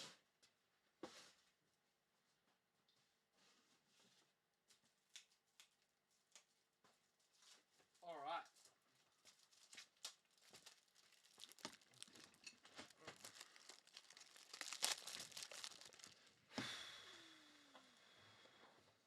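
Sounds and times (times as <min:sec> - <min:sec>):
packaging crinkling and rustling: 0:09.0 - 0:16.5
tearing noise: 0:09.5 - 0:16.5.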